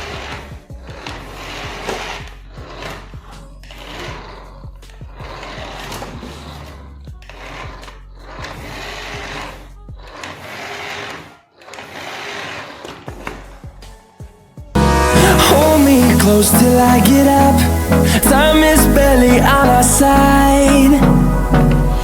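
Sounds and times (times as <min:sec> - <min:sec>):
toy motor and gears whirring: 0:00.0 - 0:13.6.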